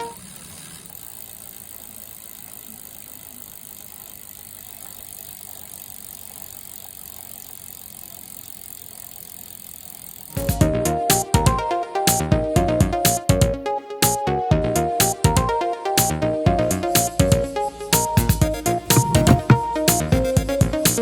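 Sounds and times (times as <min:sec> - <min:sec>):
bicycle wheel turning noise: 0:00.0 - 0:10.4, 0:18.0 - 0:20.1.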